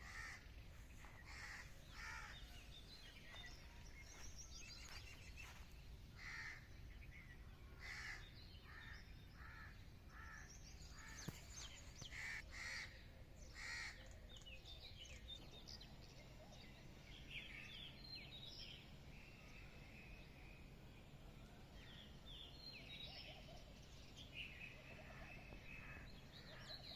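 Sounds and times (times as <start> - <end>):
harsh bird calls: 0.0 - 5.6, 6.2 - 14.2.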